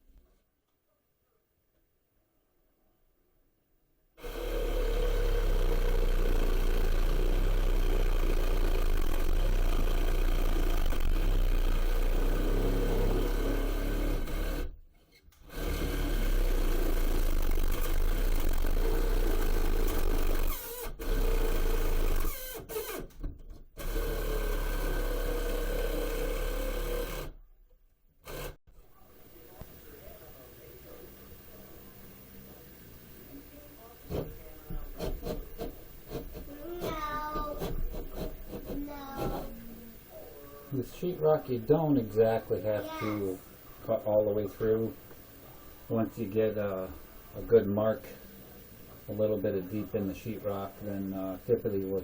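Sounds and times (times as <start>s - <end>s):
power saw cutting drywall: 4.2s - 14.8s, 15.4s - 23.1s, 23.8s - 27.4s, 28.2s - 28.6s, 34.1s - 39.6s.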